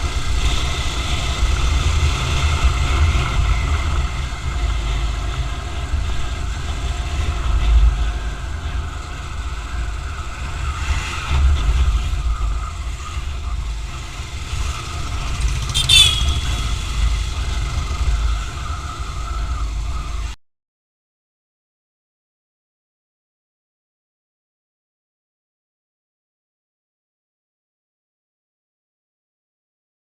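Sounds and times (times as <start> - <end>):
road noise: 0.0 - 20.4
vehicle engine rumble: 0.0 - 20.4.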